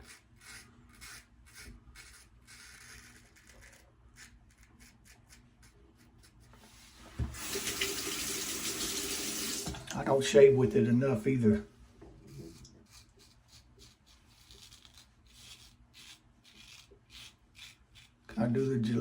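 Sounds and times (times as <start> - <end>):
razor scraping on stubble: 0.0 - 6.8, 12.2 - 19.0
water running into sink: 7.1 - 10.1.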